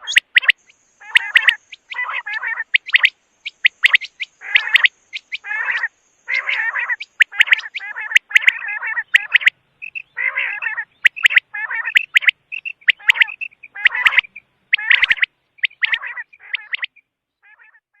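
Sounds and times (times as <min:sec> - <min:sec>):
quail calling: 0:00.0 - 0:18.0.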